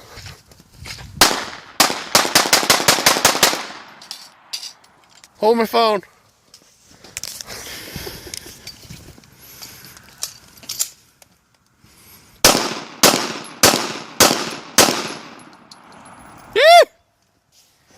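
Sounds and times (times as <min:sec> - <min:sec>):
gunshots with short echo: 0:12.4 - 0:15.4.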